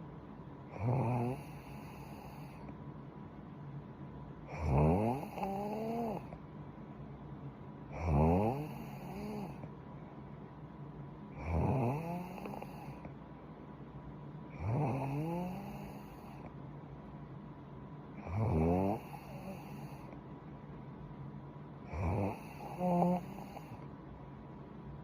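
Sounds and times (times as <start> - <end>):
woman snoring: 0.7 - 2.7, 4.5 - 6.4, 7.9 - 9.6, 11.4 - 13.1, 14.6 - 16.4, 18.2 - 20.1, 21.9 - 23.8.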